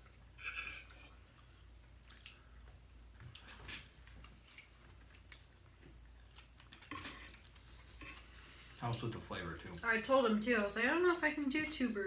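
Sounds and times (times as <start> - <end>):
wet chewing sounds: 0.0 - 9.1.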